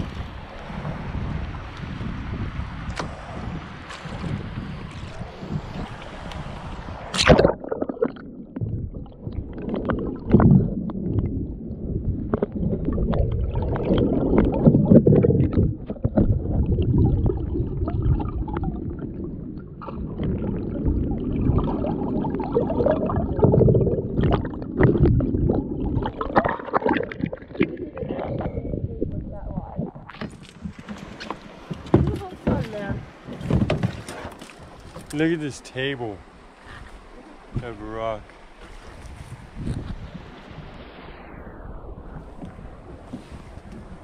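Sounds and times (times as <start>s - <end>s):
water gurgling around hull: 0.0s - 44.0s
paddle knocking on boat: 30.1s - 35.2s.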